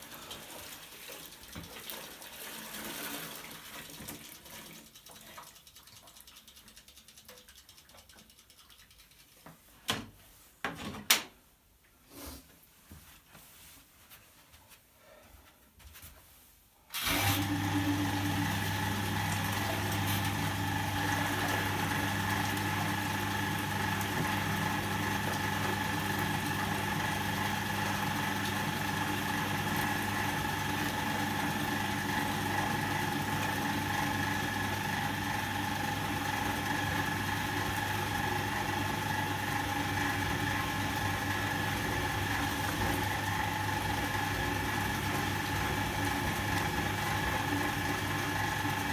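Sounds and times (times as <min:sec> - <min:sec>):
washing machine motor humming: 0:17.0 - 0:48.9.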